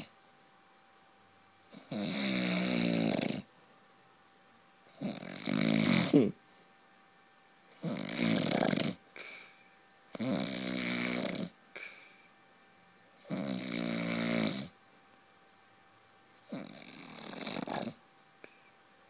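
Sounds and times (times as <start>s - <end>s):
man snoring loudly: 1.8s - 3.5s, 4.9s - 6.4s, 7.8s - 9.0s, 10.1s - 11.6s, 13.2s - 14.8s, 16.5s - 18.0s
soft breath: 9.1s - 9.8s, 11.7s - 12.4s, 18.4s - 18.9s.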